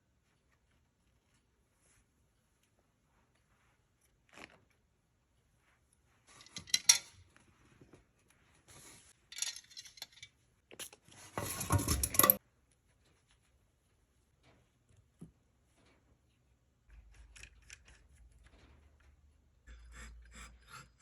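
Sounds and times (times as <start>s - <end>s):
metal shears clinking and rattling: 11.3s - 12.4s.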